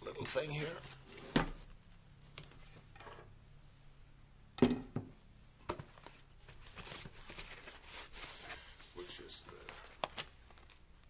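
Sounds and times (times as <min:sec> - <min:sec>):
packaging rustling: 0:06.0 - 0:10.9.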